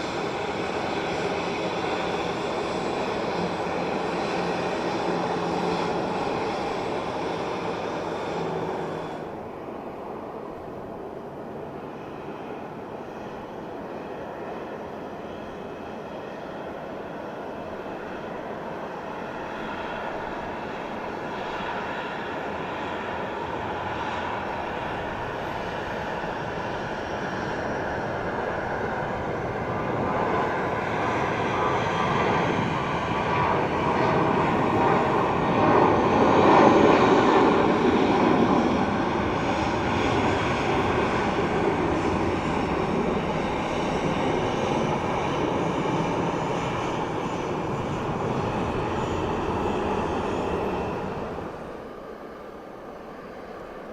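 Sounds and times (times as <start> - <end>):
faint engine whine: 0.0 - 53.9
jet engines droning: 0.0 - 53.9.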